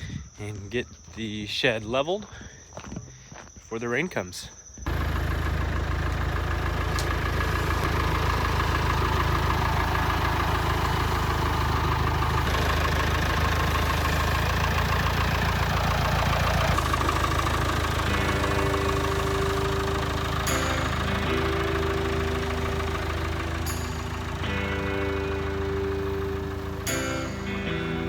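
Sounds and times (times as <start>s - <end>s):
engine idling: 4.9s - 28.0s
steady tones: 4.9s - 28.0s.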